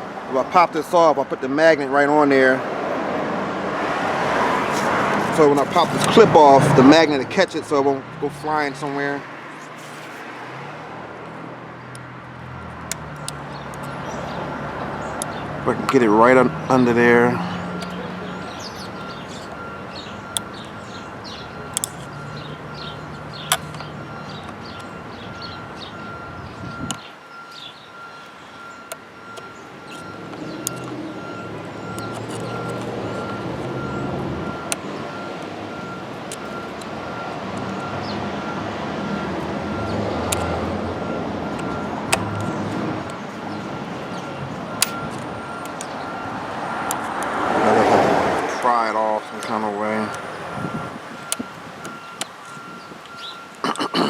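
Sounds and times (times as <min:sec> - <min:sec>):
street traffic hum: 0:00.0 - 0:54.0
faint pulsing beep: 0:17.5 - 0:42.7, 0:50.0 - 0:54.0
hand tool clicks: 0:21.7 - 0:24.9.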